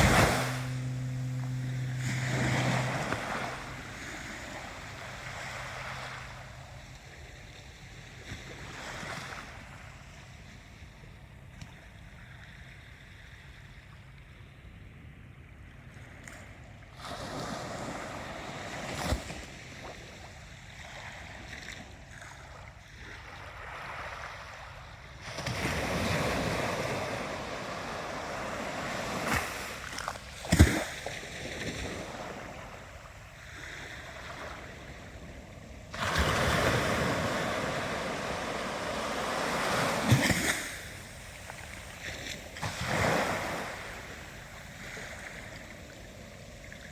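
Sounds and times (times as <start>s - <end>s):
sharp thumps: 0.0s - 6.8s
ocean waves washing in: 0.0s - 7.0s, 33.4s - 45.3s.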